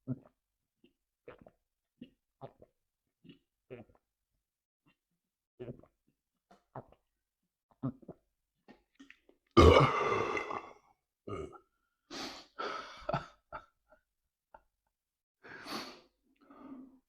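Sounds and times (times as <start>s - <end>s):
man burping: 9.6s - 11.6s.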